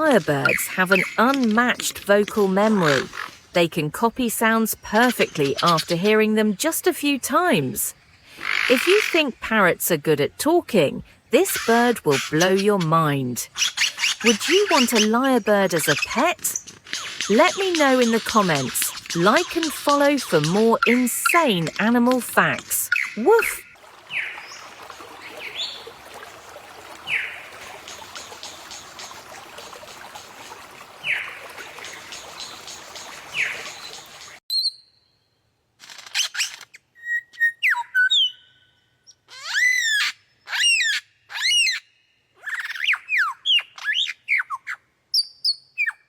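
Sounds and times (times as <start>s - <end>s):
lyrebird calling: 0.0s - 1.9s, 8.3s - 9.3s, 11.4s - 34.4s
steady outdoor hiss: 0.0s - 34.4s.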